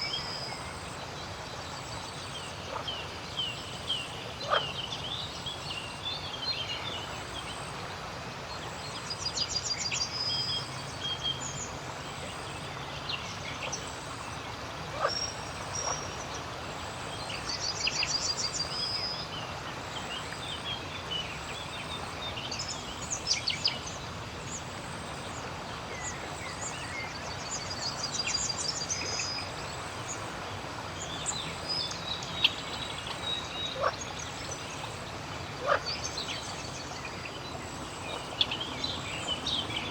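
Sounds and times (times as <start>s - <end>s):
steady background hiss: 0.0s - 39.9s
frogs calling: 35.6s - 36.0s.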